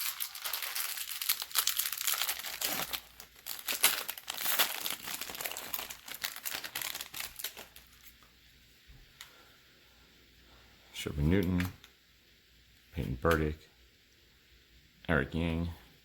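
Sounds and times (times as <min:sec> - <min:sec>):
wrapper tearing and crinkling: 0:00.0 - 0:08.2.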